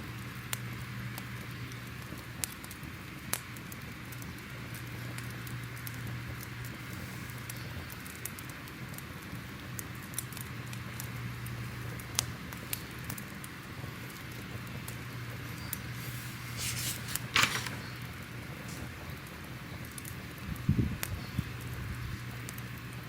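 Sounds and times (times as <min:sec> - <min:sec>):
fire crackling and popping: 0:00.5 - 0:11.1, 0:11.9 - 0:15.0.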